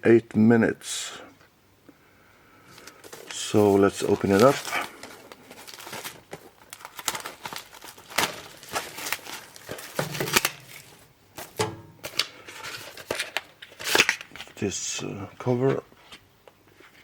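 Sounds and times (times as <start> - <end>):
plastic shrink-wrap crinkling and tearing: 2.7 - 14.5.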